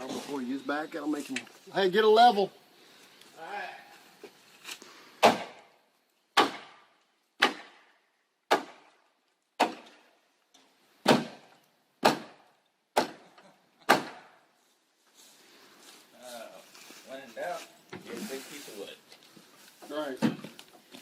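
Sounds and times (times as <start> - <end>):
wooden post being struck: 8.5 - 8.8, 11.0 - 12.4, 13.9 - 14.3.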